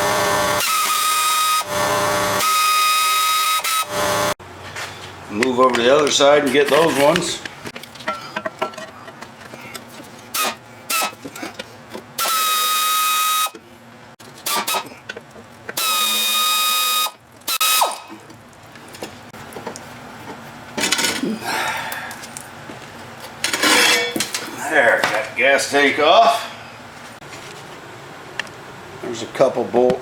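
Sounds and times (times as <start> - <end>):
cordless power driver whining: 0.0 - 4.3, 12.2 - 13.6, 15.7 - 18.0
tools and parts clinking: 5.3 - 12.1, 17.4 - 21.4, 23.2 - 25.3.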